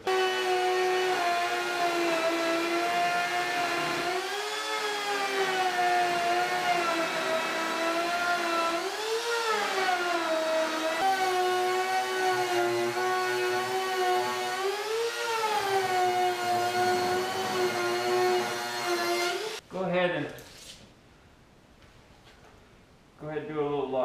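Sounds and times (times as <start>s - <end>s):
router motor whining: 0.0s - 19.6s.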